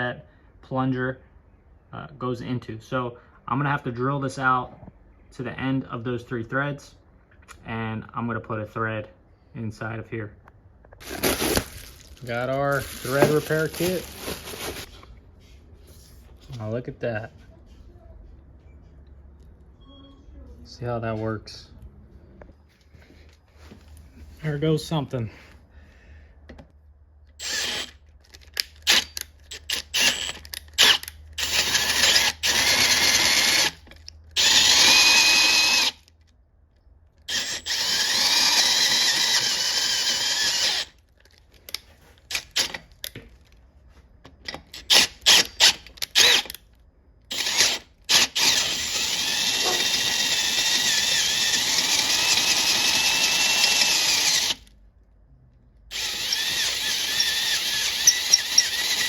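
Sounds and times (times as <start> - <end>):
electric drill whining: 27.4 - 28.0, 28.8 - 33.8, 34.4 - 36.1, 37.3 - 41.0, 44.9 - 46.6, 47.3 - 54.7, 55.9 - 59.0.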